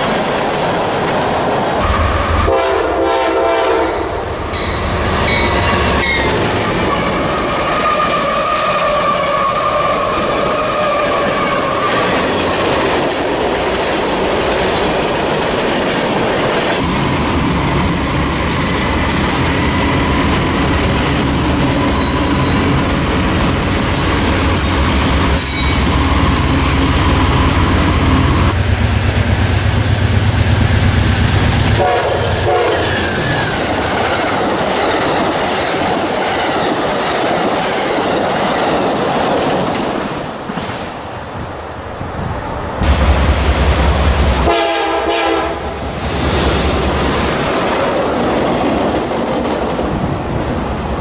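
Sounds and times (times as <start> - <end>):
train wheels clacking on rails: 0.0 - 41.0, 42.2 - 50.7
locomotive engine rumbling: 1.7 - 13.9, 41.6 - 49.6
train horn: 1.8 - 4.7, 31.7 - 33.2, 44.2 - 45.8.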